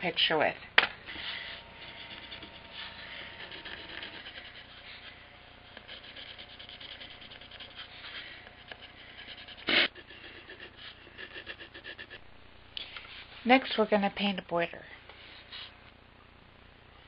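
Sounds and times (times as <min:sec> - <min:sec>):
pencil scribbling on wood: 0:01.2 - 0:12.2.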